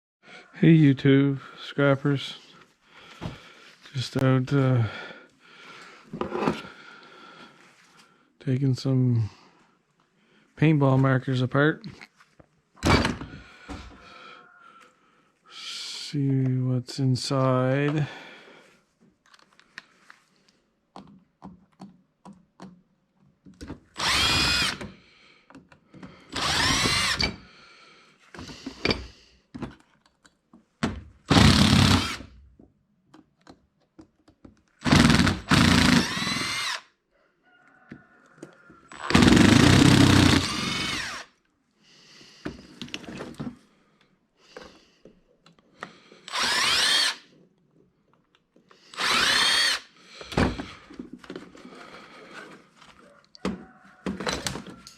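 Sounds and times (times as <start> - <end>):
power drill whining: 12.8 - 14.0, 23.9 - 25.0, 25.9 - 27.5, 31.3 - 32.3, 34.8 - 36.9, 38.8 - 41.4, 45.8 - 47.4, 48.7 - 52.8, 54.0 - 54.9.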